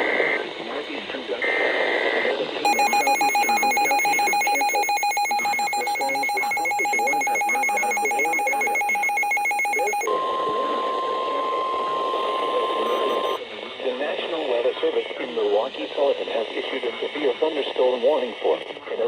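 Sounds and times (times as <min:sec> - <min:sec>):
pulsing electronic alert beeping: 0:02.7 - 0:10.1
steady warning alarm tone: 0:02.7 - 0:13.4.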